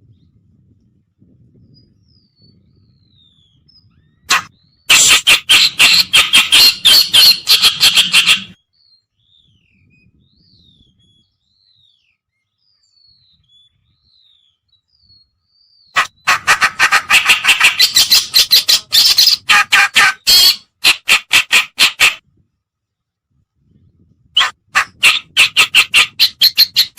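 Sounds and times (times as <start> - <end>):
bird harsh chattering: 4.3 - 8.6, 16.0 - 22.2, 24.4 - 26.9.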